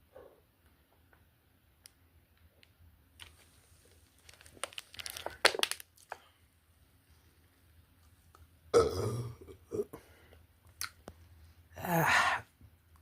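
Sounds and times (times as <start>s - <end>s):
crinkling and crackling: 2.4s - 6.4s.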